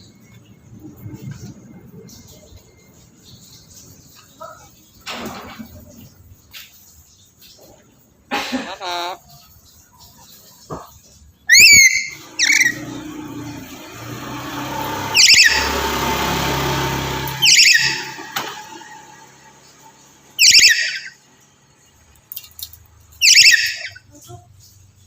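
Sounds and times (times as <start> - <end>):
parrot screeching: 8.7 - 9.2, 11.5 - 12.9, 15.0 - 15.8, 17.3 - 18.2, 20.4 - 21.2, 23.2 - 24.0.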